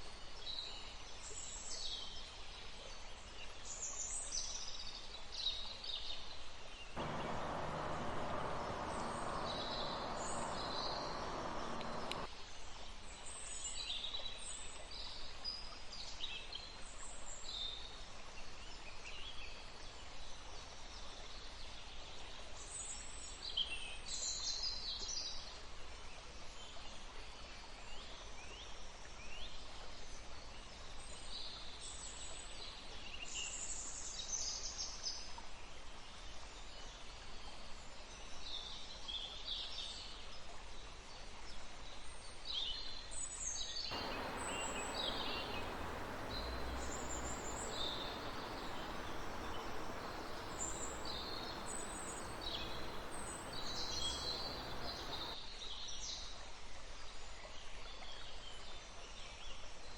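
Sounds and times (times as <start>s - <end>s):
faint background hiss: 7.0s - 12.3s, 43.9s - 55.4s
forest birds chirping: 7.0s - 12.3s, 43.9s - 55.4s.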